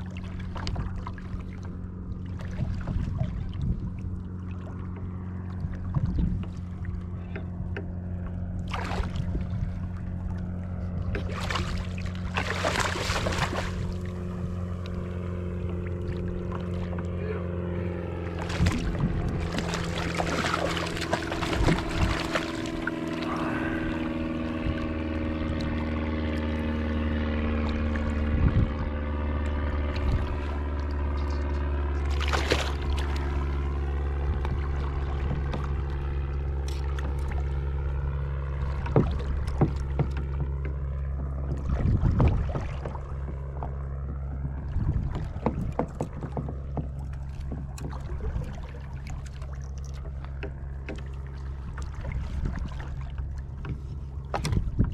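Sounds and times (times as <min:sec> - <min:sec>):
boat motor running: 0:00.0 - 0:54.9
sharp knocks: 0:38.8 - 0:48.1.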